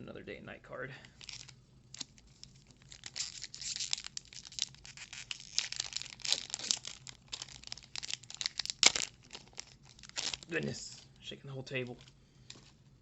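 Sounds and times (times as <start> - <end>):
foil wrapper tearing and crinkling: 1.2 - 10.6.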